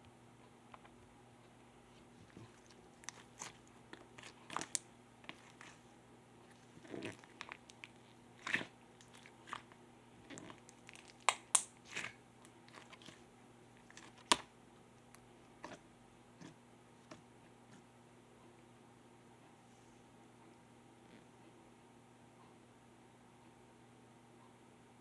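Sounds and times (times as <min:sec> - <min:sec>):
slime popping and crackling: 0:02.3 - 0:05.8, 0:06.5 - 0:13.2, 0:13.8 - 0:14.5.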